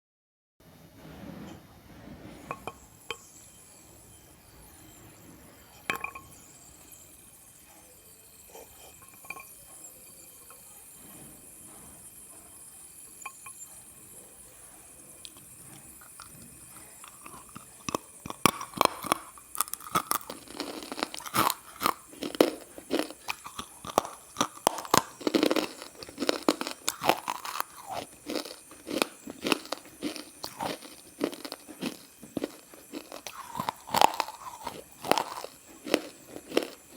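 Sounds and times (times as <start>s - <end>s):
crisp crunching: 16.1s - 36.9s.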